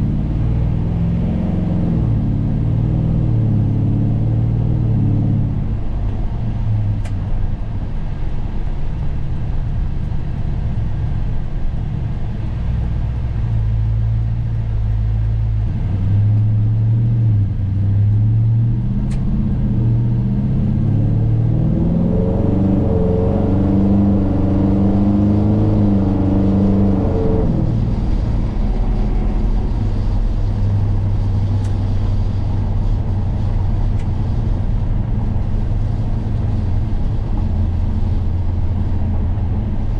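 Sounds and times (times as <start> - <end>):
truck engine revving: 15.7 - 32.6.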